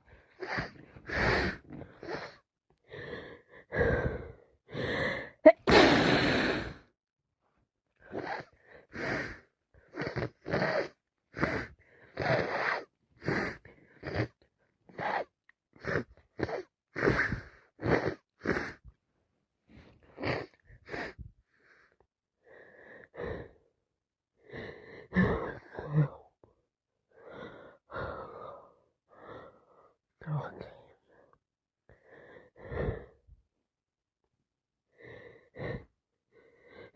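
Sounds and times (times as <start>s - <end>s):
woman breathing noisily: 0.0s - 6.9s
woman sneezing: 5.5s - 6.2s.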